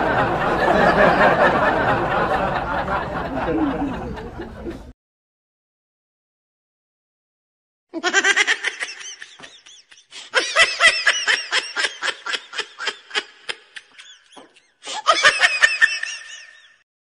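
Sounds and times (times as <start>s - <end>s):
person laughing: 3.2s - 4.9s, 8.0s - 16.8s.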